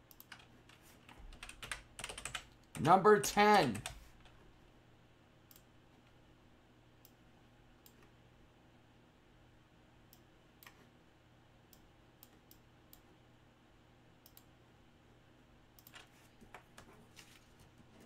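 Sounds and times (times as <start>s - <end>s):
computer keyboard and mouse clicks: 0.0s - 2.8s, 15.8s - 16.9s.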